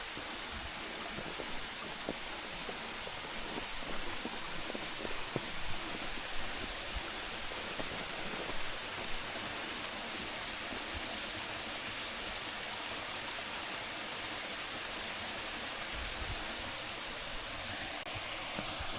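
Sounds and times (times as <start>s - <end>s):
waterfall rushing: 0.0s - 18.9s
soft low thumps: 0.1s - 9.4s.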